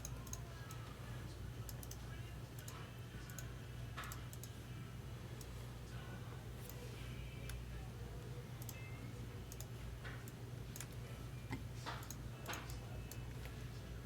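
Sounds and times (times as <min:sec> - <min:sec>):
steady low hum: 0:00.0 - 0:14.0
keyboard and mouse clicks: 0:09.5 - 0:13.2.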